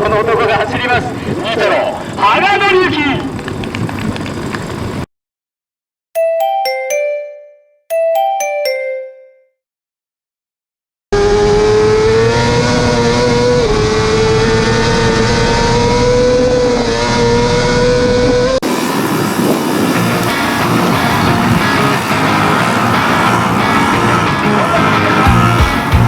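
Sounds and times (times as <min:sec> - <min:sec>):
short chime jingle: 0:06.2 - 0:09.6
minibike engine at high revs: 0:11.2 - 0:26.0.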